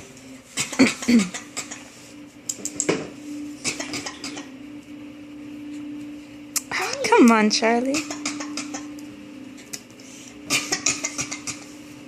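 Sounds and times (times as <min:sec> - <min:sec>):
pet fake coughing: 0:00.6 - 0:01.9, 0:03.6 - 0:04.6, 0:08.0 - 0:09.0, 0:10.5 - 0:11.7.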